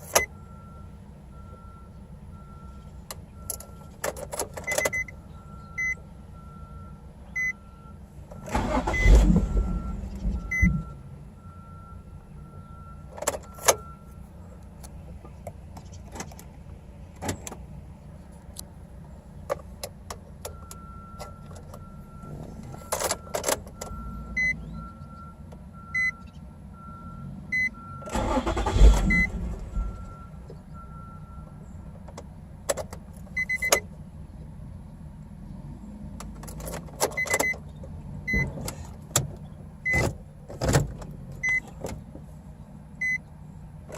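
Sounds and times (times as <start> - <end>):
dashboard warning chime beeping: 0.0 - 14.4, 20.4 - 32.0, 33.3 - 33.9, 37.1 - 37.7, 38.3 - 38.6, 39.8 - 40.2, 41.4 - 41.8, 43.0 - 43.3
engine cranking by starter: 8.3 - 10.9, 28.0 - 30.6.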